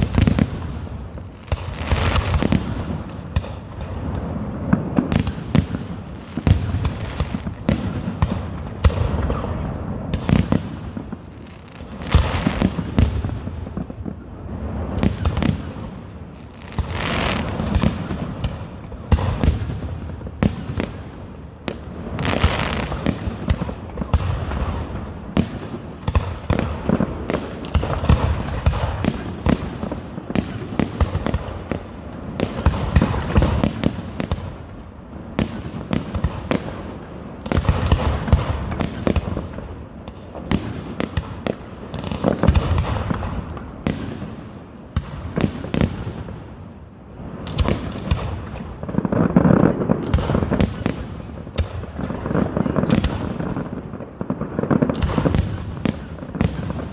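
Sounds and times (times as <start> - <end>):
fireworks bangs and crackles: 0.0 - 56.9.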